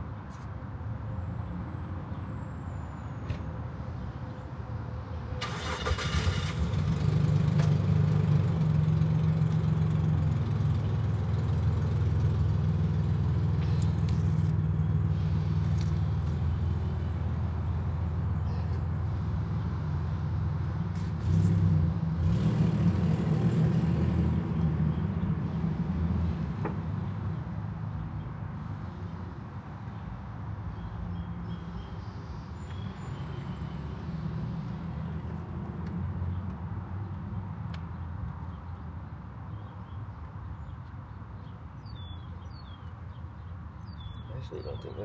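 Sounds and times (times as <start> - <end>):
car starter cranking: 5.4 - 6.6.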